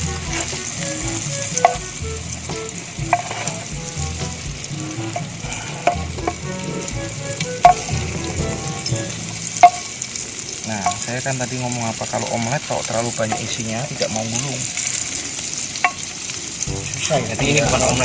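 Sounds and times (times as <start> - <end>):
omelet sizzling in a pan: 0.0 - 18.0
utensil clicking against pan: 0.1 - 3.8, 4.4 - 8.6, 9.6 - 11.2, 12.9 - 15.0, 15.8 - 16.3.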